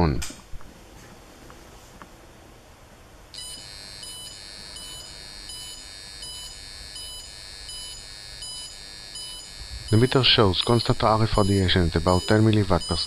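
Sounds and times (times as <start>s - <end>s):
meter buzzing in a high tone: 3.3s - 13.0s.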